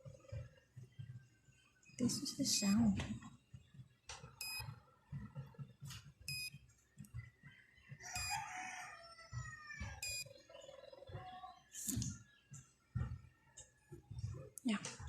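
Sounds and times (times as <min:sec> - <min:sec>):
rooster crowing: 0:08.0 - 0:10.2.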